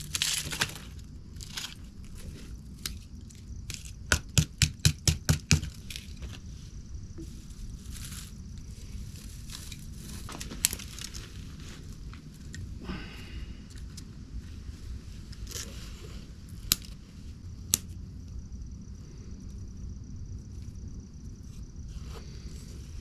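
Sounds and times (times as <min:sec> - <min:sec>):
rustling and crinkling packaging: 0:00.0 - 0:04.1, 0:05.6 - 0:12.6.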